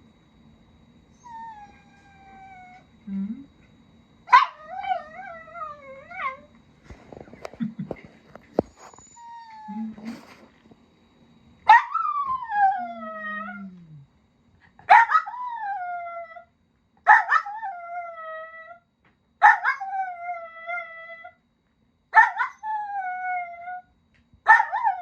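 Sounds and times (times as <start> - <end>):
dog howling: 1.2 - 2.9, 11.7 - 14.0.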